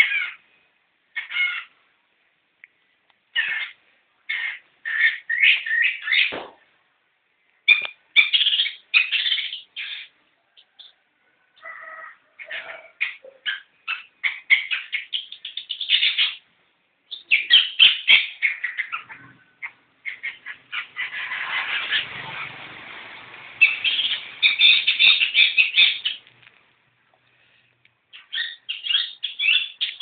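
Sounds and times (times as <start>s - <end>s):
bird harsh chattering song: 3.4s - 6.4s, 7.7s - 11.0s, 12.4s - 16.4s, 17.1s - 22.8s, 23.5s - 26.3s, 28.1s - 30.0s.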